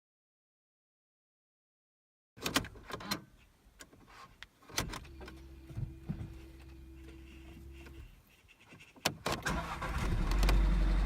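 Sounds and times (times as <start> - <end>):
clicks of car key and controls: 2.4 - 4.0.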